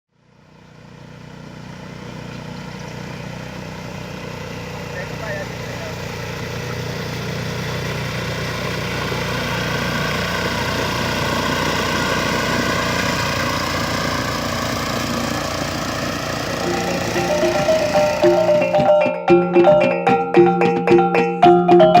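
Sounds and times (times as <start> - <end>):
small engine running: 0.1 - 22.0.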